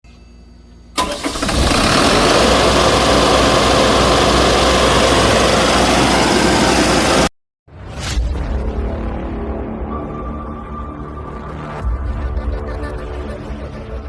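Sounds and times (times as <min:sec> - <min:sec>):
generator engine starting and running: 0:00.8 - 0:07.3.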